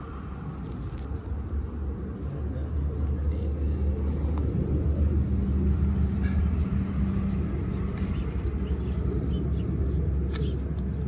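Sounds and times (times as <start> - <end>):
low motor drone: 0.0 - 11.0.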